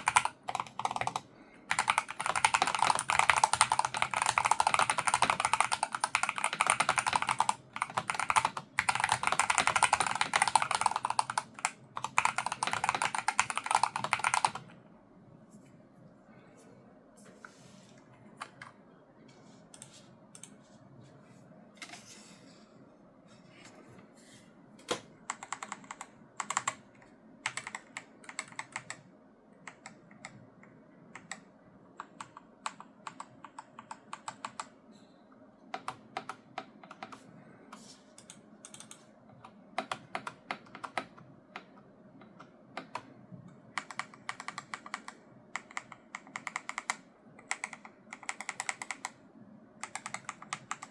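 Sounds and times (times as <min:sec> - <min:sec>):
keyboard typing clacks: 0:00.0 - 0:14.7, 0:24.9 - 0:26.8, 0:27.4 - 0:29.0, 0:43.8 - 0:49.2, 0:49.8 - 0:50.9.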